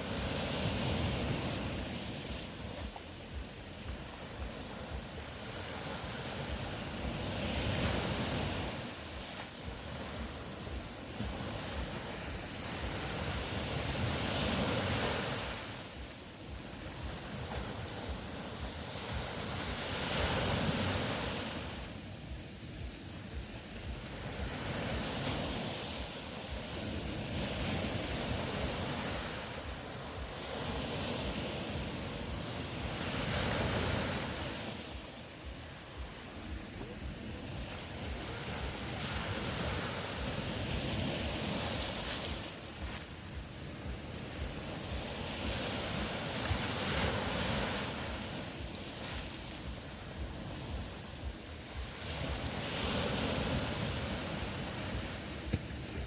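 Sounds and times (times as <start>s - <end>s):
ocean waves washing in: 0.0s - 56.0s.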